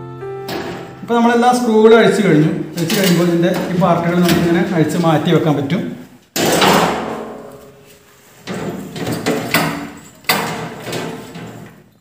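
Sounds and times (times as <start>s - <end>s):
sheet metal panels clanking: 0.4s - 12.0s.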